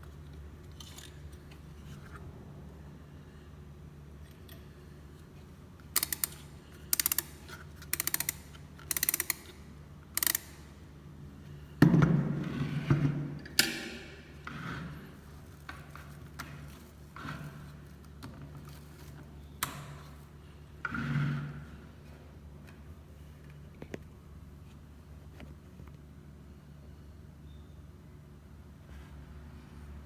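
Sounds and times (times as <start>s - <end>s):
ratchet clicking: 5.9s - 10.7s.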